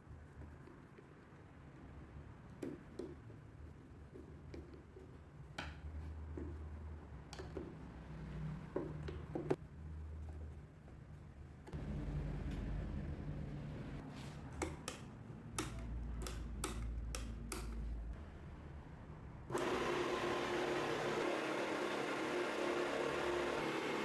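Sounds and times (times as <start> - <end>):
sharp clicks and knocks: 14.6 - 17.9
electric motor whirring: 19.5 - 24.0.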